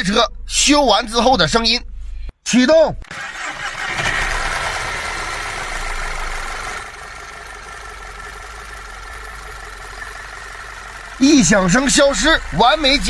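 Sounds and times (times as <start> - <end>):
car engine idling: 3.0 - 13.0.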